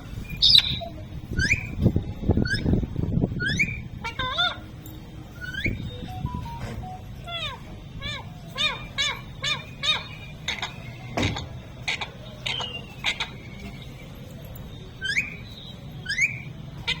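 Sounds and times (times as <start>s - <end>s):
parrot whistled chirps: 0.3s - 1.8s, 2.4s - 2.8s, 3.4s - 4.5s, 5.4s - 6.1s, 14.9s - 17.0s
parrot squawking: 0.4s - 1.8s, 2.4s - 2.8s, 3.4s - 4.7s, 5.4s - 5.8s, 7.3s - 13.8s, 15.0s - 17.0s.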